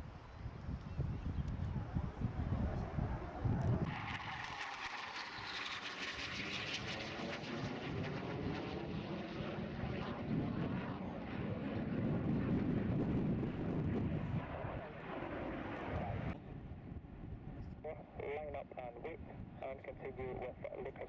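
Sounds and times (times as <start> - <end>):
aircraft flying past: 1.7 - 16.4.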